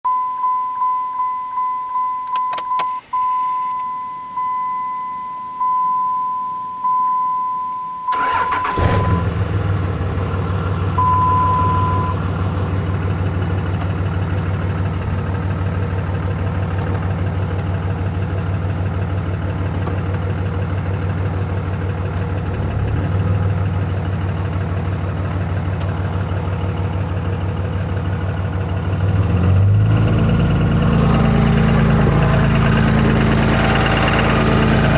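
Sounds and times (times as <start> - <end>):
vehicle warning chime beeping: 0.0 - 9.4, 11.0 - 12.2
diesel engine starting and idling: 8.1 - 34.9.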